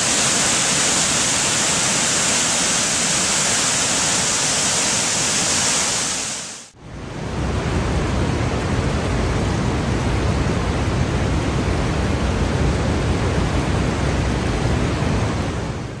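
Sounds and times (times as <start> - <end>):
waterfall rushing: 0.0 - 6.8.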